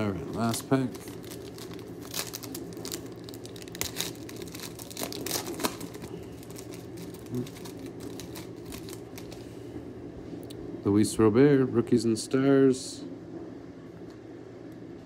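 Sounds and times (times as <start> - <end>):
card pack wrapper tearing: 0.1 - 9.4.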